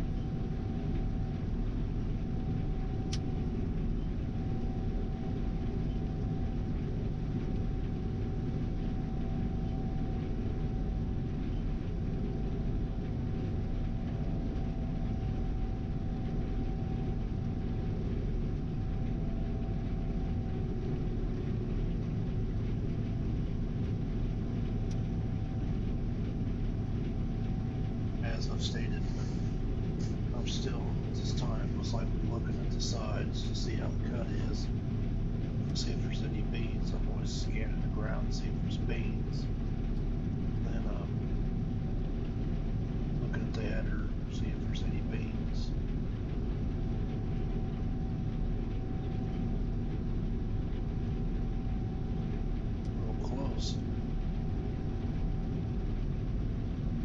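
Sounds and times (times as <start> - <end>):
combine harvester drone: 0.0 - 57.0
steady hum: 0.0 - 57.0
faint ticks: 3.0 - 3.3, 24.8 - 25.1.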